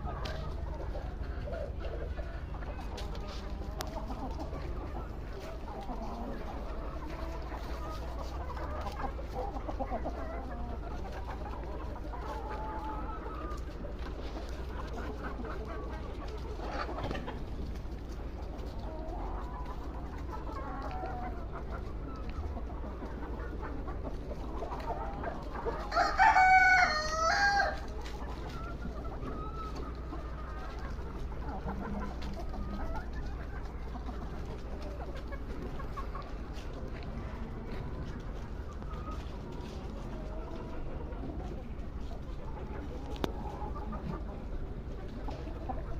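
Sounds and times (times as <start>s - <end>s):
chickens clucking: 0.0s - 45.9s
rooster crowing: 25.9s - 27.8s.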